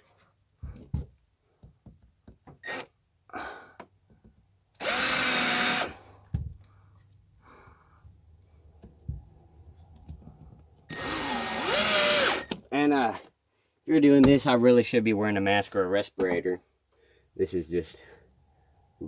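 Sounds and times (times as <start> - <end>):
cordless drill running: 4.8 - 6.1, 10.9 - 12.6.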